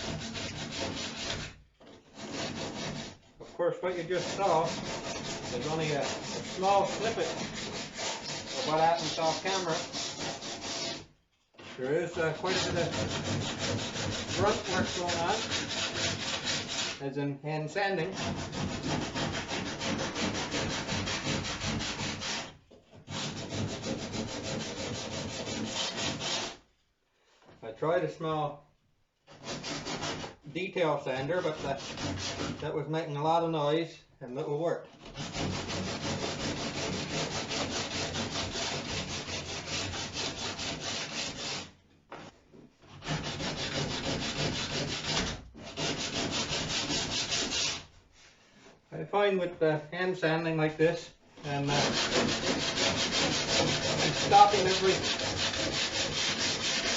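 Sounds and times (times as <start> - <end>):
sandpaper rubbing on wood: 0.0 - 3.2, 3.8 - 17.0, 18.1 - 26.6, 29.3 - 30.3, 31.2 - 32.6, 35.0 - 41.7, 43.0 - 48.3, 51.4 - 56.9.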